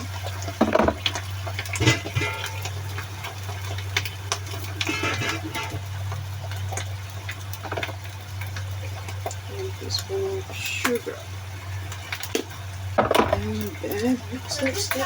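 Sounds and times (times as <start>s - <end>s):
low hum: 0.0s - 15.0s
spoon scraping cooking pan: 1.8s - 3.0s, 4.7s - 5.9s.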